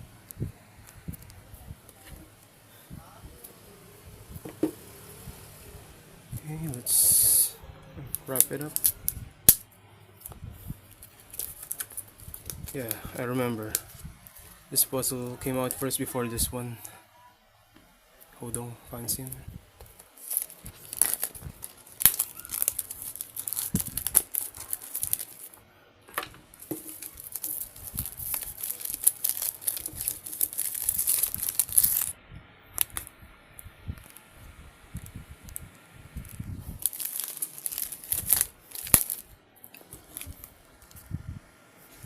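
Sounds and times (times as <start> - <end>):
plastic packaging crinkling: 8.1 - 9.6, 10.2 - 16.1, 18.4 - 25.6, 26.5 - 32.2, 32.8 - 33.1, 36.2 - 41.1.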